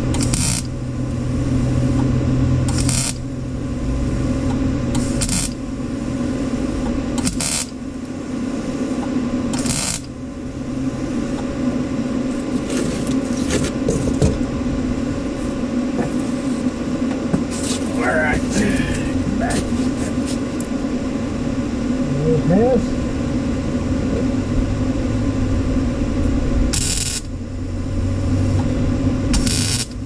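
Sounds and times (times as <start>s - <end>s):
steady hum: 0.0s - 30.0s
welding crackling bursts: 0.1s - 0.7s, 2.7s - 3.2s, 5.0s - 5.6s, 7.2s - 7.8s, 9.6s - 10.1s, 26.7s - 27.3s, 29.3s - 30.0s.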